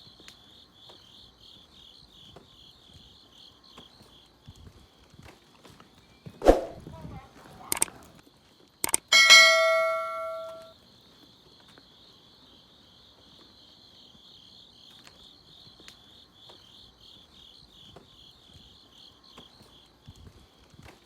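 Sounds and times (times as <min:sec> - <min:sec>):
crickets chirping: 0:00.0 - 0:21.0
bell-like ding: 0:09.1 - 0:10.7.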